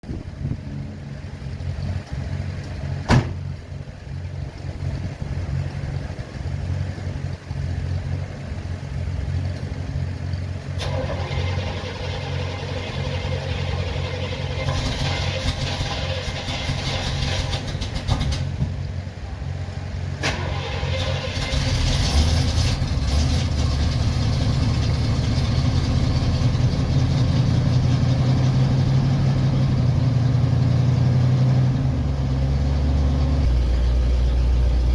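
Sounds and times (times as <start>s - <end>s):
car engine cold start: 10.7s - 18.9s, 20.1s - 30.5s.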